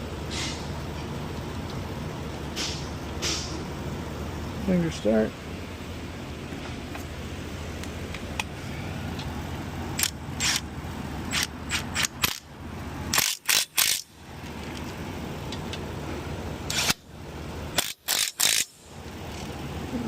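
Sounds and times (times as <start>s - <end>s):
low shop hum: 0.0s - 20.0s
pneumatic impact wrench bursts: 0.3s - 0.7s, 2.6s - 3.6s, 10.0s - 10.6s, 11.3s - 12.5s, 13.1s - 14.1s, 16.7s - 17.0s, 17.7s - 18.9s.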